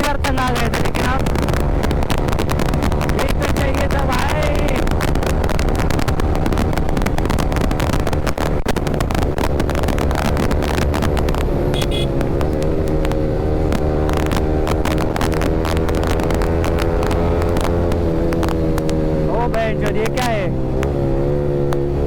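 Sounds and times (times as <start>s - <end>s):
motorcycle engine cruising: 0.0s - 22.0s.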